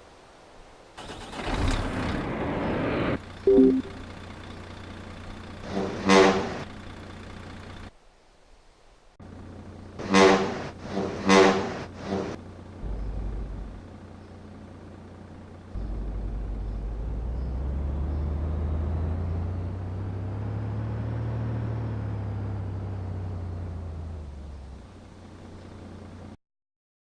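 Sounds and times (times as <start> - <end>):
vehicle engine running: 2.1 - 7.9, 9.2 - 26.4
vehicle horn honks: 6.0 - 6.6, 10.0 - 10.6, 11.2 - 11.7.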